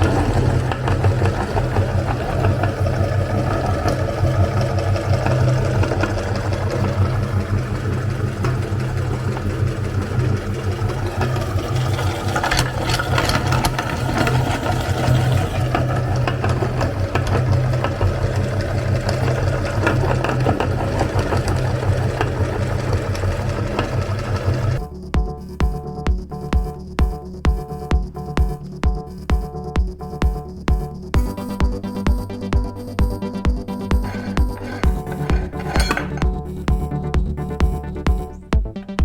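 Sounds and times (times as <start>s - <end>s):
electric meat grinder motor humming: 0.0s - 24.8s, 34.0s - 36.3s.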